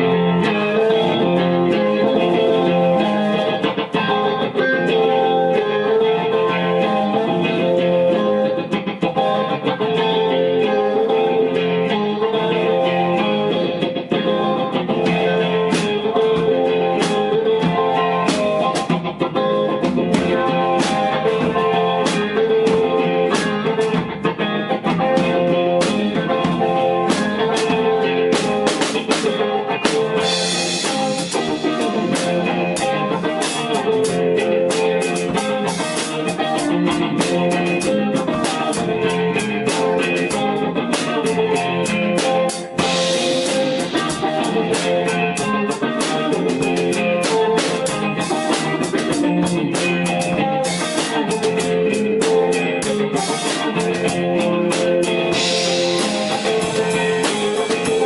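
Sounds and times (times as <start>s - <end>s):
guitar playing: 0.0s - 58.0s
sharp percussion hits: 24.9s - 58.0s.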